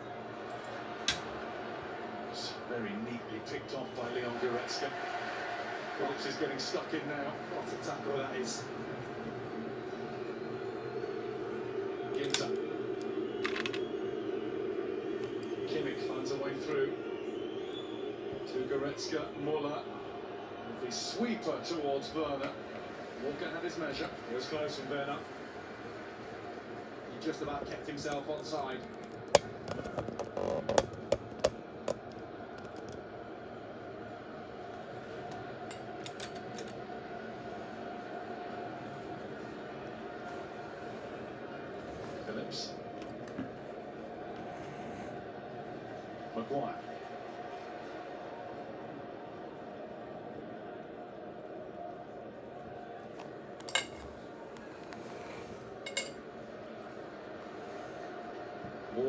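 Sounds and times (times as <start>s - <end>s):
stadium crowd noise: 0.0s - 59.0s.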